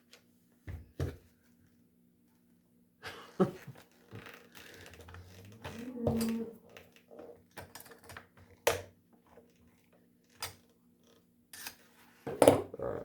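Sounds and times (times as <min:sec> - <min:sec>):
clicks and light clatter of parts: 0:04.2 - 0:11.7.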